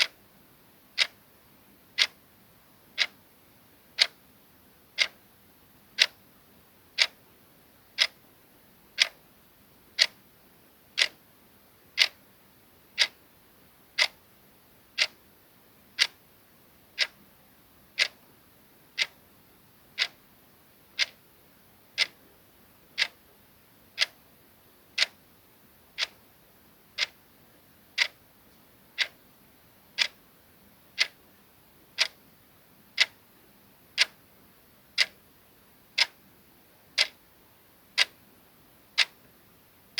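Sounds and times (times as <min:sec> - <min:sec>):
clock ticking: 0:01.0 - 0:01.2, 0:02.0 - 0:02.2, 0:03.0 - 0:03.2, 0:04.0 - 0:04.2, 0:05.0 - 0:05.2, 0:06.0 - 0:06.2, 0:07.0 - 0:07.2, 0:08.0 - 0:08.2, 0:09.0 - 0:09.2, 0:10.0 - 0:10.2, 0:11.0 - 0:11.2, 0:12.0 - 0:12.2, 0:13.0 - 0:13.2, 0:14.0 - 0:14.2, 0:15.0 - 0:15.2, 0:16.0 - 0:16.2, 0:17.0 - 0:17.2, 0:18.0 - 0:18.2, 0:19.0 - 0:19.2, 0:20.0 - 0:20.2, 0:21.0 - 0:21.2, 0:22.0 - 0:22.2, 0:23.0 - 0:23.2, 0:24.0 - 0:24.2, 0:25.0 - 0:25.2, 0:26.0 - 0:26.2, 0:27.0 - 0:27.2, 0:28.0 - 0:28.2, 0:29.0 - 0:29.2, 0:30.0 - 0:30.2, 0:31.0 - 0:31.2, 0:32.0 - 0:32.2, 0:33.0 - 0:33.2, 0:34.0 - 0:34.2, 0:35.0 - 0:35.2, 0:36.0 - 0:36.2, 0:37.0 - 0:37.2, 0:38.0 - 0:38.2, 0:39.0 - 0:39.2.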